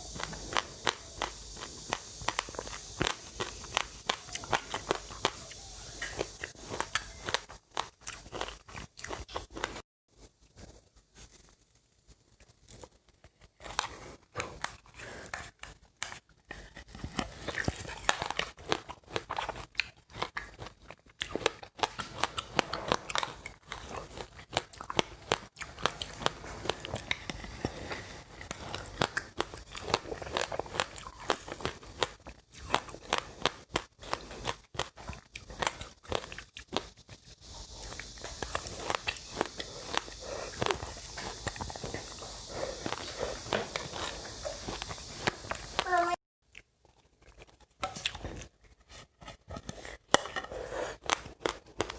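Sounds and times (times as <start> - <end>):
chewing crunchy seeds: 0.0 - 9.8, 12.3 - 51.9.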